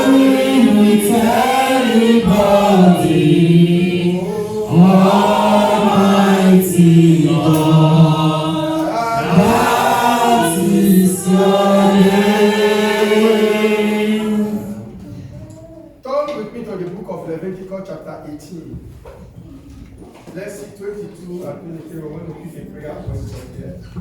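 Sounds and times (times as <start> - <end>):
congregation singing a worship song: 0.0 - 15.5.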